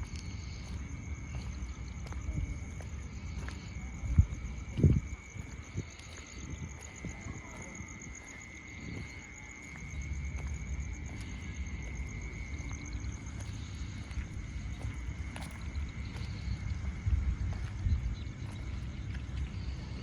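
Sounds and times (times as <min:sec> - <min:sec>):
insects trilling: 0:00.0 - 0:20.0
low rumble: 0:09.8 - 0:20.0.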